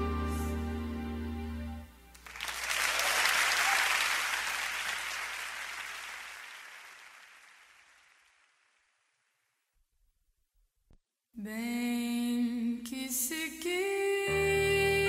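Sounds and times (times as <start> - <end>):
audience applause: 2.2 - 8.8.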